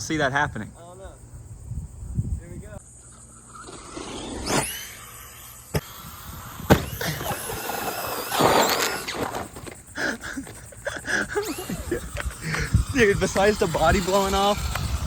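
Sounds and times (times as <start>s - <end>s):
electric motor whining: 3.4s - 9.8s, 11.1s - 15.0s
toy truck landing impacts: 6.6s - 9.8s.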